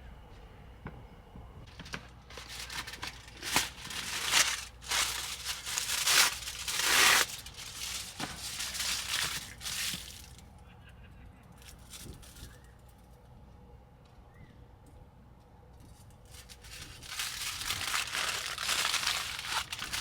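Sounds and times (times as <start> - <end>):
packaging crinkling and tearing: 1.7 - 10.4, 16.3 - 20.0.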